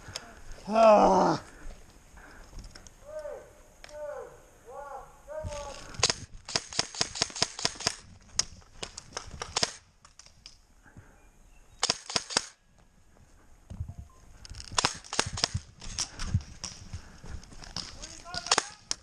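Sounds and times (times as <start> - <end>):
airsoft guns firing in bursts: 5.5 - 8.1, 8.8 - 9.8, 11.8 - 12.6, 14.7 - 16.2, 17.7 - 19.0.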